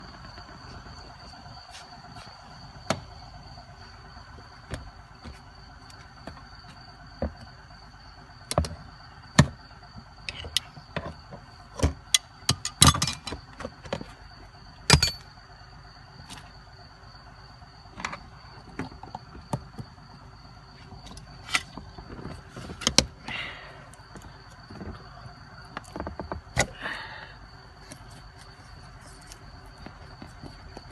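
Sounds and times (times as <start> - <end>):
hand tools clicking and knocking: 10.3 - 14.0, 14.9 - 15.2.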